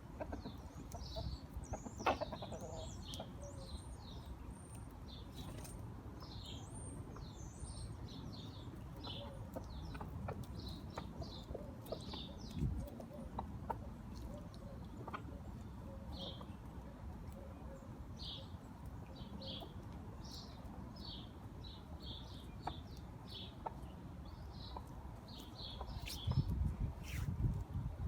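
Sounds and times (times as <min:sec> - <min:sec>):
small birds chirping: 0:00.0 - 0:27.5
low rustling noise: 0:25.5 - 0:28.0.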